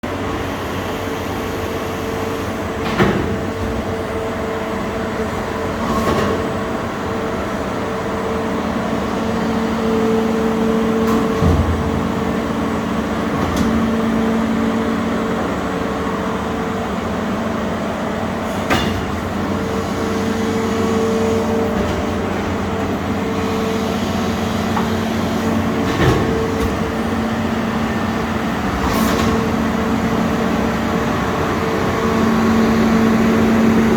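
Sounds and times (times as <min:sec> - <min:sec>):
machine mechanical hum: 0:00.0 - 0:33.9.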